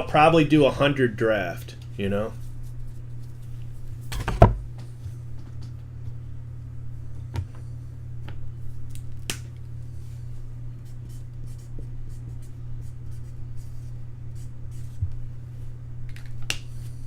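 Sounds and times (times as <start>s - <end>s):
low hum: 4.0s - 5.0s.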